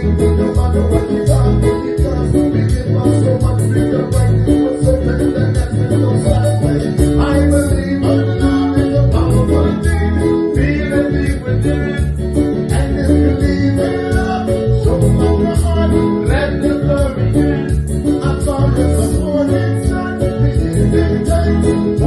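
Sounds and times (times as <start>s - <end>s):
bass guitar: 0.0s - 22.0s
guitar: 0.0s - 22.0s
person singing: 0.0s - 22.0s.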